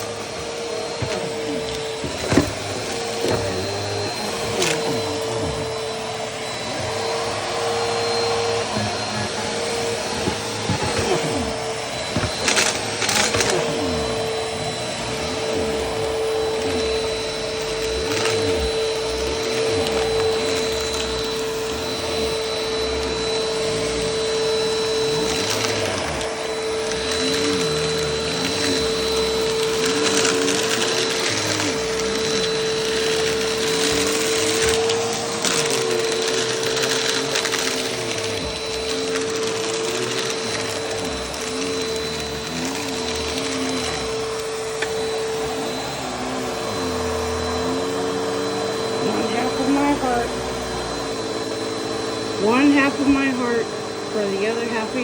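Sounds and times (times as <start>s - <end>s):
vacuum cleaner running: 0.0s - 55.0s
vacuum cleaner knocks: 0.3s - 6.0s, 8.1s - 13.8s.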